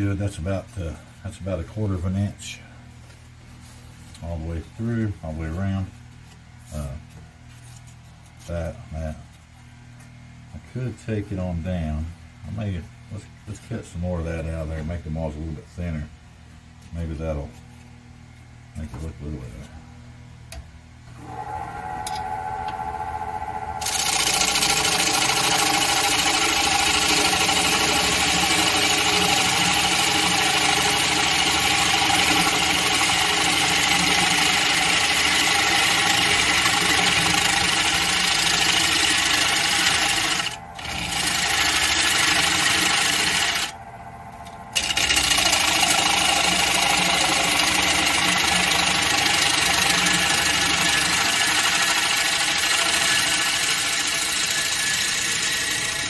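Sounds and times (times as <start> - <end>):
wood lathe humming: 21.1 - 56.0
gouge hissing cut into wood: 23.8 - 43.7, 44.8 - 56.0.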